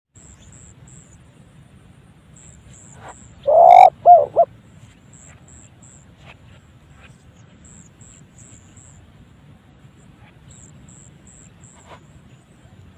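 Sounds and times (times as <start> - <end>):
faint high chirps: 3.3 - 4.5
dove harsh call: 3.4 - 4.5
dove cooing: 3.5 - 4.5.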